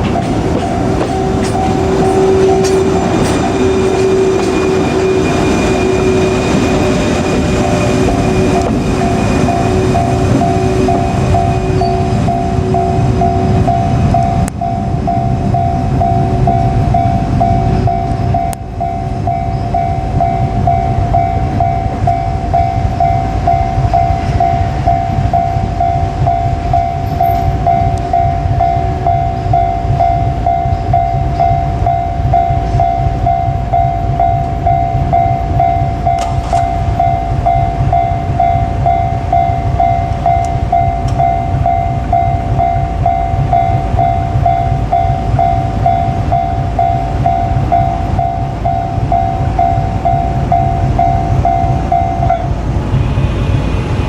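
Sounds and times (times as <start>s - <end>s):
level crossing bell ringing: 0.0s - 52.5s
freight train rumbling past: 0.0s - 54.0s.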